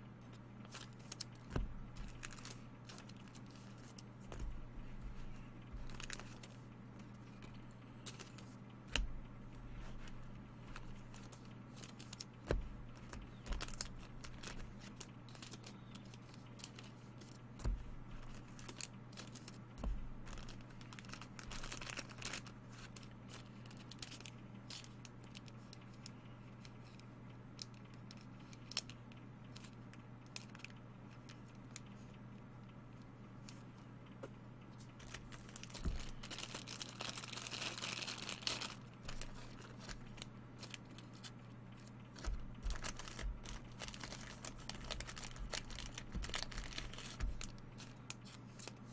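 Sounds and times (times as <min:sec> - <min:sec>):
steady low hum: 0:00.0 - 0:48.9
wrapper and cardboard crinkling: 0:00.7 - 0:04.6, 0:05.7 - 0:08.5, 0:09.8 - 0:26.0, 0:35.0 - 0:48.8.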